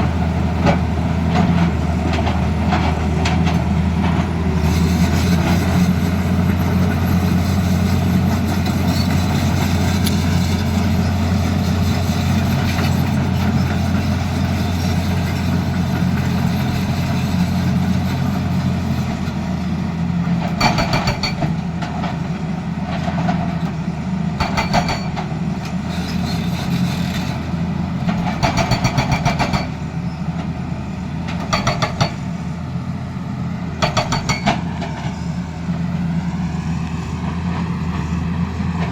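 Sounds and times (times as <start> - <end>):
diesel engine running: 0.0 - 38.9
hydraulic breaker hammering: 31.4 - 32.2, 33.8 - 34.8.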